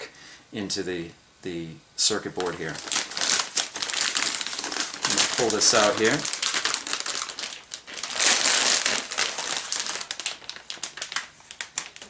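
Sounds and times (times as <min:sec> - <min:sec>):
plastic packaging crackling: 0:02.3 - 0:12.0.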